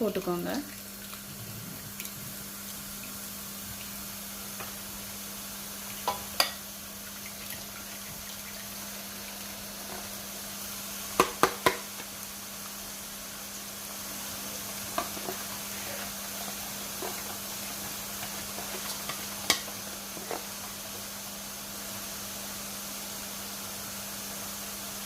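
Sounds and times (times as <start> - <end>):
batter sizzling in hot oil: 0.0 - 25.0.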